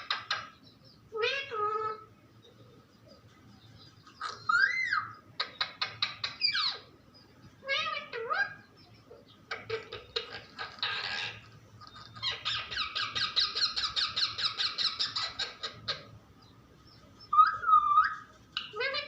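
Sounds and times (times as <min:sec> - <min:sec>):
parrot chattering: 0:00.0 - 0:02.1, 0:04.1 - 0:06.9, 0:07.6 - 0:08.7, 0:09.4 - 0:16.1, 0:17.3 - 0:19.0.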